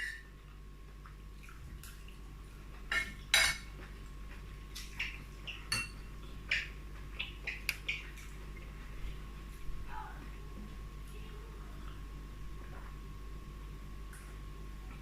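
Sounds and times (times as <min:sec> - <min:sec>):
cutlery clinking on a plate: 0:02.9 - 0:03.6.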